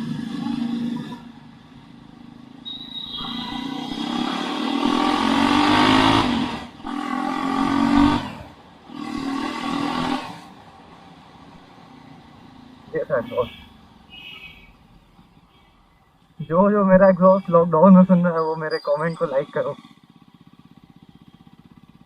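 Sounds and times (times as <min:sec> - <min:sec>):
motorcycle engine accelerating: 0:00.0 - 0:11.5, 0:19.3 - 0:22.0.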